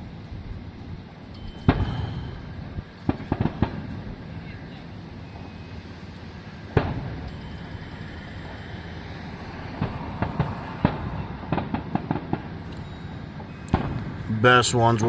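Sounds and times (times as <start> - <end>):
fireworks rumble: 0.0 - 15.0
fireworks popping and banging: 2.9 - 4.4, 6.7 - 8.6, 9.7 - 15.0.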